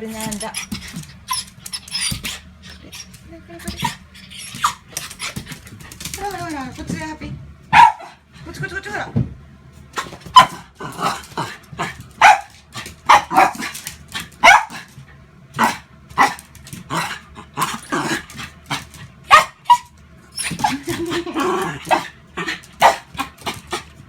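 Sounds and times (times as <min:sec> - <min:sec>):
dog barking sharply: 0:07.7 - 0:08.2, 0:12.2 - 0:12.5, 0:13.1 - 0:13.7, 0:14.4 - 0:14.8, 0:19.3 - 0:19.9, 0:22.8 - 0:23.2.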